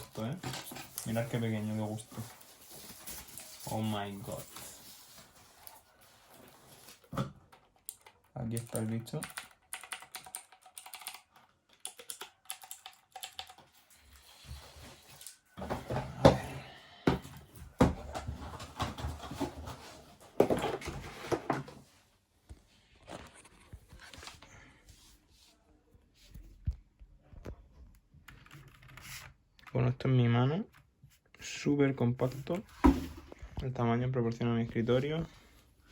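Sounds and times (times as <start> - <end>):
packaging rustling: 0.0 - 7.1
keyboard clicks and knocks: 7.3 - 13.8.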